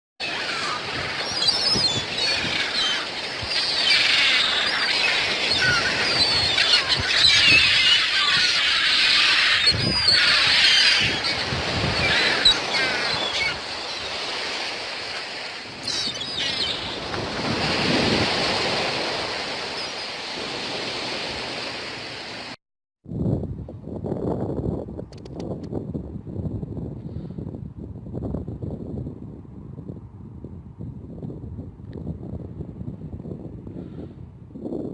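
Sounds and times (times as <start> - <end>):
birds chirping: 0.3 - 14.2, 15.8 - 17.1.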